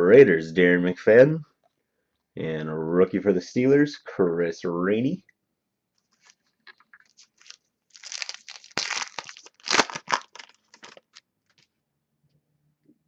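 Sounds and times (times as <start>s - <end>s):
wrapper tearing and crinkling: 6.1s - 11.7s.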